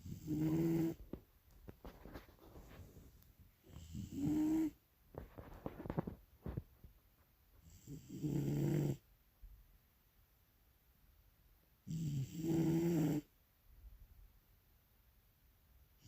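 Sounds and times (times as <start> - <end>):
dog snoring: 0.0 - 1.0, 3.6 - 4.8, 7.6 - 9.0, 11.8 - 13.3.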